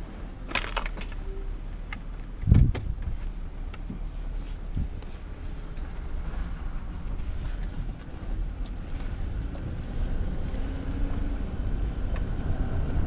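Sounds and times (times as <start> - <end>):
car engine and tyre rumble: 0.0 - 13.0
sharp clicks or rattles: 0.5 - 1.2.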